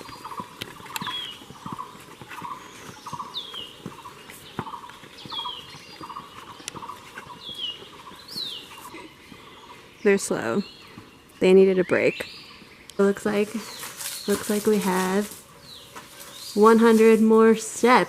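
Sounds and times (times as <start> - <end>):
footsteps climbing stone stairs: 0.0 - 9.9.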